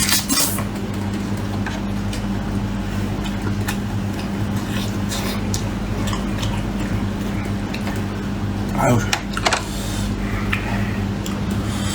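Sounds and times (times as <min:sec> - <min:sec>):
steady low hum: 0:00.0 - 0:11.9
person chewing with wet smacks: 0:03.0 - 0:08.2, 0:10.4 - 0:11.6.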